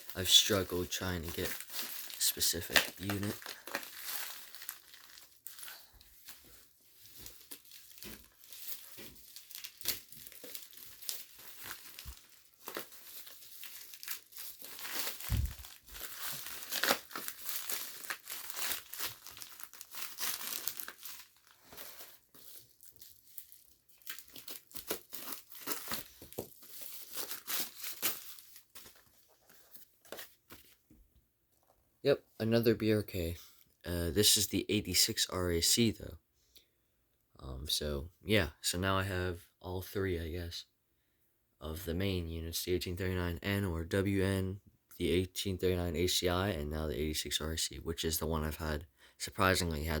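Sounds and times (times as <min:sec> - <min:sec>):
packaging crinkling and tearing: 0:00.0 - 0:30.8.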